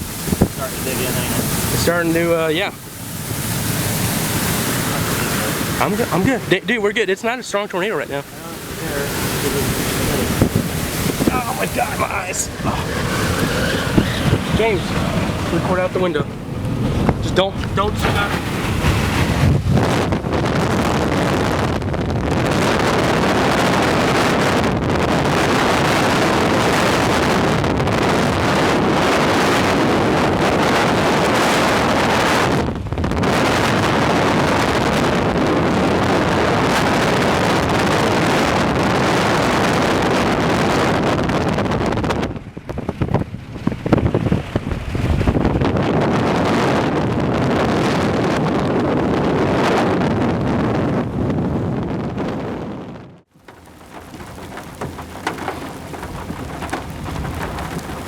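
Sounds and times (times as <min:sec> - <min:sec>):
wind buffeting microphone: 0:00.0 - 0:58.0.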